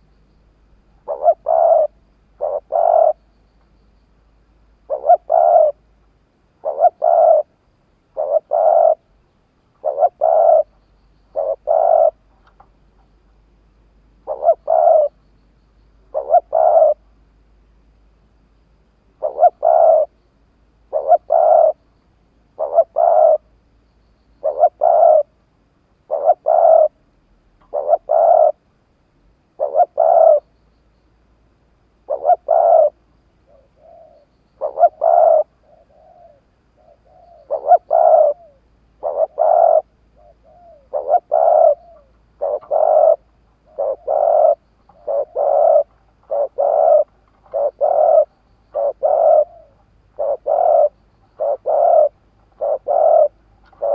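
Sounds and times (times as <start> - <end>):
dove cooing: 1.0 - 3.2, 4.9 - 5.8, 6.6 - 9.1, 9.8 - 12.3, 14.2 - 15.2, 16.1 - 17.1, 19.2 - 20.2, 20.9 - 21.8, 22.6 - 23.5, 24.4 - 25.4, 26.0 - 27.0, 27.6 - 28.6, 29.5 - 30.5, 32.0 - 53.9
faint soft coos: 1.0 - 3.2, 4.9 - 5.8, 6.6 - 7.5, 8.1 - 9.1, 9.8 - 10.7, 11.3 - 12.3, 14.2 - 15.2, 16.1 - 17.0, 19.2 - 20.1, 20.9 - 21.8, 22.6 - 23.5, 24.4 - 25.3, 26.1 - 27.0, 27.6 - 28.6, 29.6 - 30.5, 32.1 - 53.9.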